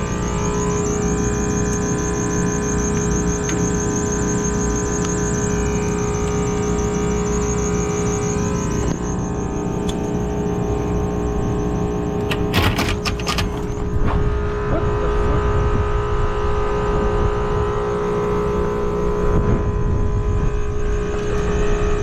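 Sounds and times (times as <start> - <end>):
clicks and rattles: 12.2 - 14.2.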